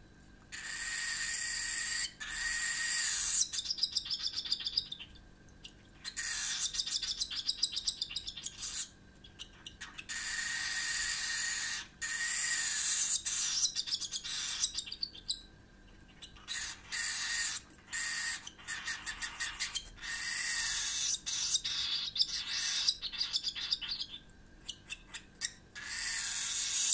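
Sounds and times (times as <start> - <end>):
bird chick raspy begging calls: 6.0 - 15.4, 16.2 - 26.9.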